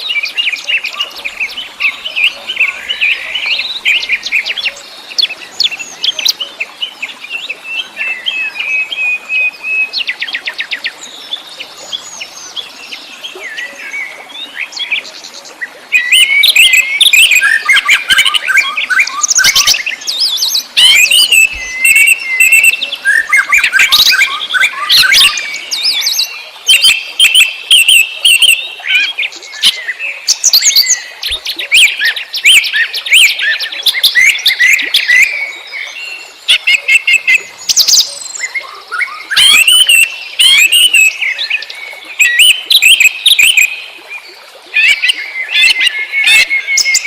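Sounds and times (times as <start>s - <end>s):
birds chirping and singing: 0.0s - 7.0s, 16.0s - 43.8s.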